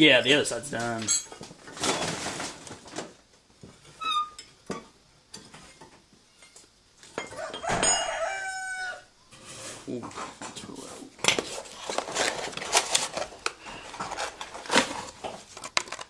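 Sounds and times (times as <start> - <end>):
metal tools clinking: 0.7 - 1.5.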